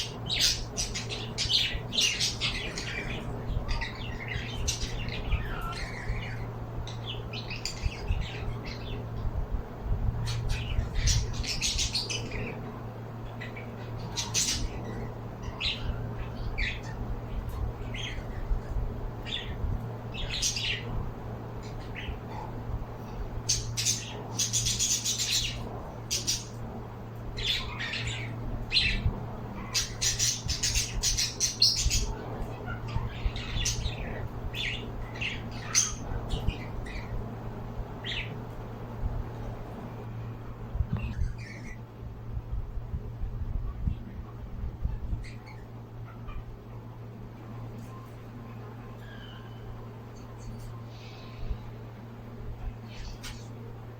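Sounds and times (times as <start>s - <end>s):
pet birds calling: 0.0s - 42.0s, 44.0s - 53.9s
steady low hum: 0.0s - 53.9s.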